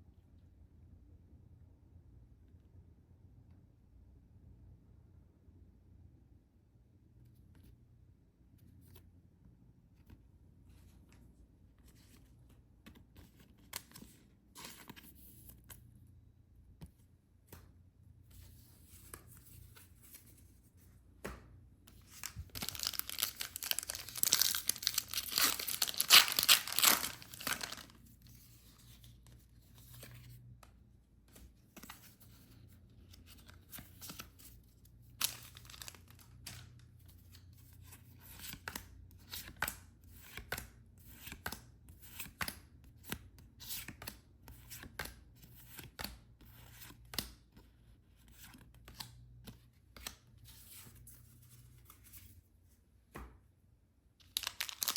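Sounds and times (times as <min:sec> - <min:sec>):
packaging tearing and crinkling: 0:22.2 - 0:28.0, 0:54.2 - 0:54.9.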